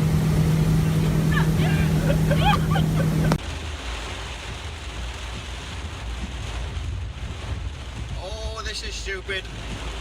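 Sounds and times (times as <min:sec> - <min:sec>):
motorboat engine running: 0:00.0 - 0:08.1
water noise: 0:00.0 - 0:10.0
wind: 0:00.0 - 0:10.0.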